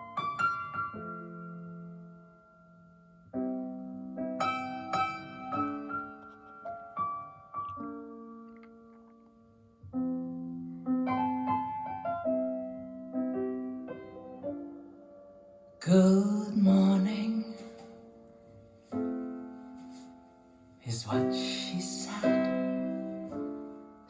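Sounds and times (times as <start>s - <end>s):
slow piano chords: 0.0s - 24.0s.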